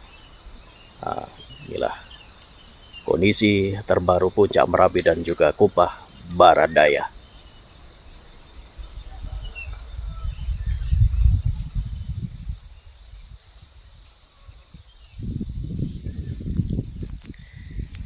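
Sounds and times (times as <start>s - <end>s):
high insect drone: 0.0s - 18.0s
wind buffeting microphone: 8.1s - 14.0s, 14.6s - 18.0s.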